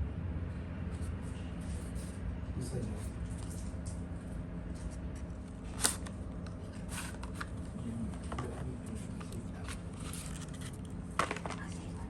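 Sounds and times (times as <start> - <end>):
steady low hum: 0.0 - 12.0
packaging clicks and rustles: 5.8 - 11.8.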